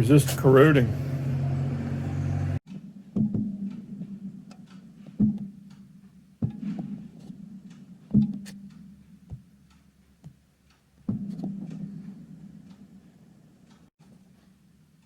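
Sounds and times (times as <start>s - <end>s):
knocks: 3.2s - 5.7s, 6.4s - 7.4s, 8.1s - 9.5s, 11.0s - 12.2s.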